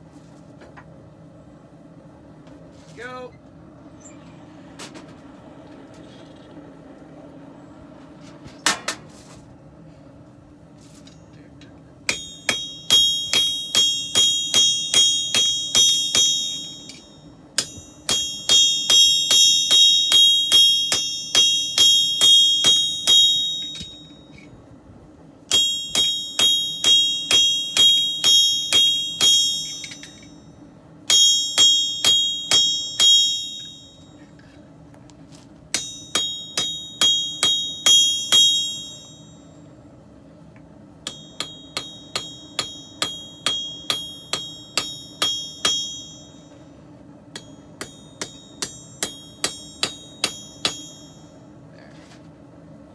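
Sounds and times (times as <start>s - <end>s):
steady low hum: 0.0s - 52.9s
hammer striking steel on anvil: 12.0s - 24.5s, 25.5s - 34.6s, 35.7s - 39.6s, 41.0s - 51.5s.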